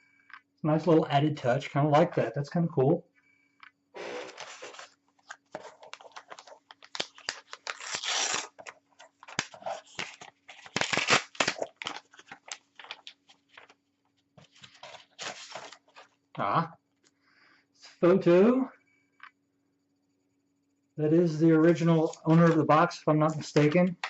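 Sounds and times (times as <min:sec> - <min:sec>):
paper rustling and crinkling: 0:04.0 - 0:13.8, 0:14.4 - 0:16.2, 0:22.0 - 0:23.8.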